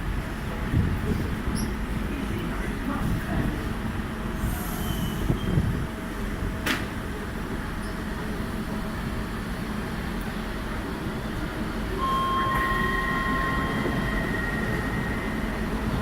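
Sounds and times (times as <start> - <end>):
train wheels rumbling on track: 0.0 - 16.0.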